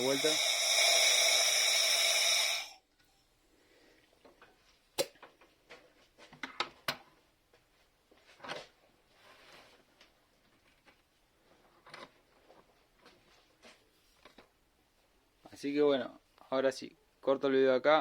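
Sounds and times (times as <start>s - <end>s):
compressed air hiss: 0.0s - 2.8s.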